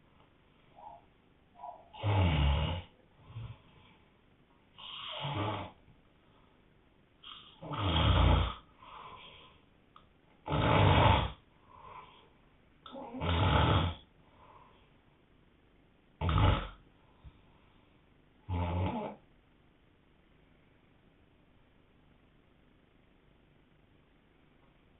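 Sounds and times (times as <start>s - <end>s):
man snoring: 2.0s - 3.6s, 4.8s - 5.8s, 7.6s - 8.7s, 10.4s - 11.4s, 13.0s - 14.0s, 16.2s - 16.8s, 18.5s - 19.2s
soft breath: 3.2s - 5.2s, 8.7s - 9.8s, 11.5s - 12.5s, 14.2s - 15.0s, 16.9s - 18.2s.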